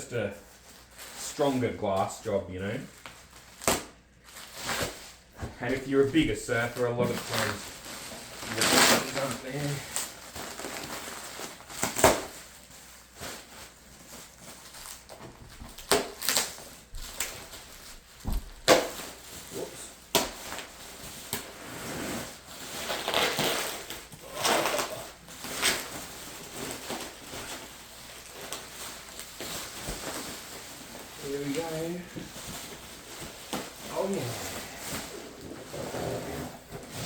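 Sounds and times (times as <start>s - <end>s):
bubble wrap crinkling: 0.2s - 37.0s.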